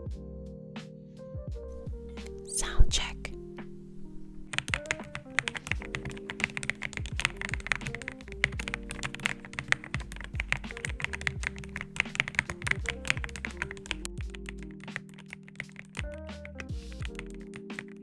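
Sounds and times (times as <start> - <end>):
background music: 0.0 - 18.0
mechanical keyboard typing: 4.5 - 18.0.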